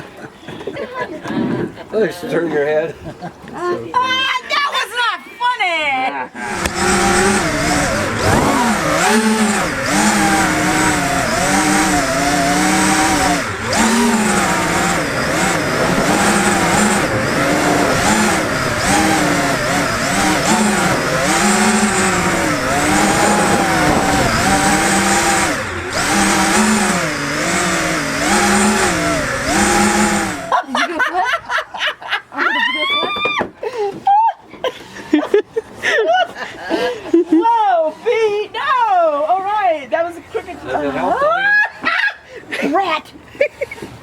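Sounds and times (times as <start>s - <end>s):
drone motors whining: 6.4s - 30.6s.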